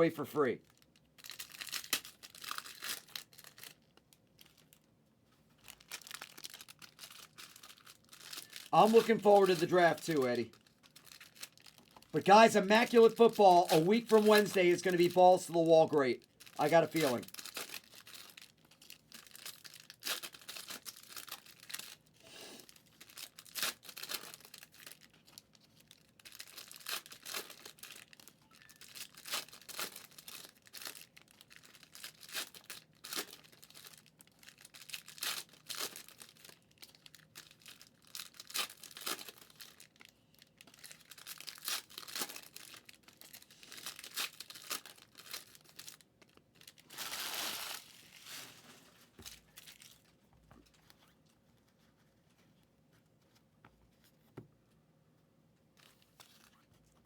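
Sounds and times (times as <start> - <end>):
card pack wrappers crinkling: 0.7 - 4.8, 5.6 - 51.1.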